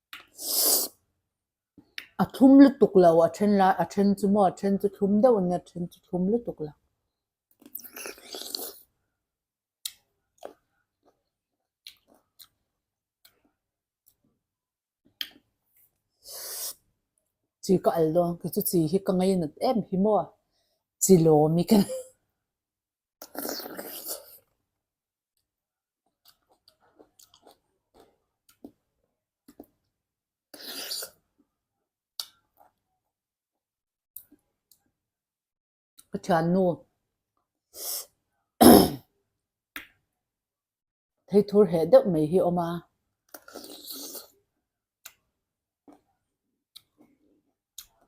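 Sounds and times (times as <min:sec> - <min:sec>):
person chewing fruit: 0:07.6 - 0:08.8, 0:09.8 - 0:12.6, 0:26.0 - 0:28.8, 0:43.3 - 0:44.4.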